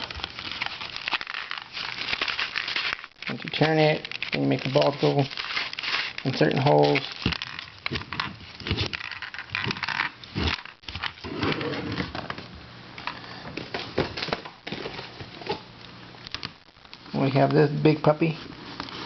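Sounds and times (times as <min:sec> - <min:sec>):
rustles: 0:00.0 - 0:12.3.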